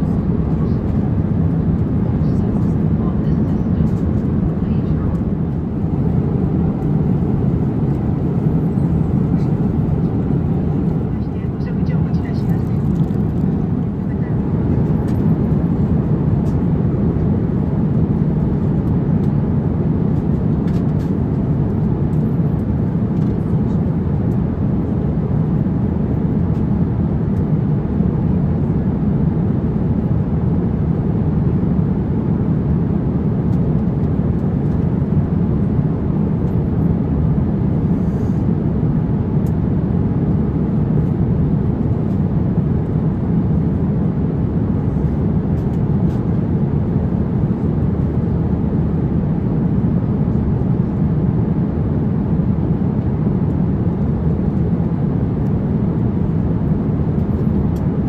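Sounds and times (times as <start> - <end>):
airliner cabin rumble: 0.0 - 58.0.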